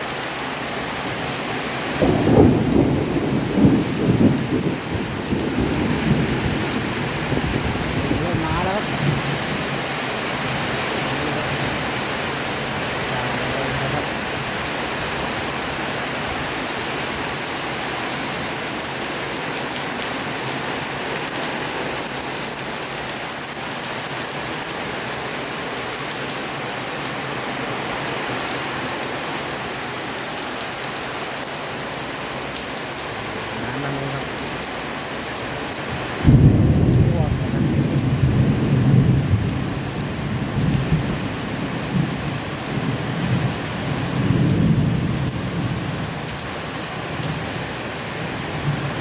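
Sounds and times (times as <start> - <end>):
heavy rain: 0.0 - 49.0
low rumble of thunder: 1.9 - 9.7, 35.9 - 46.5, 47.1 - 49.0.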